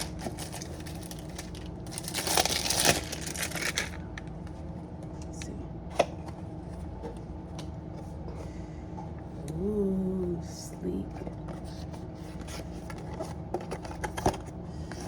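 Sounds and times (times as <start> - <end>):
packaging tearing and crinkling: 0.0 - 4.0.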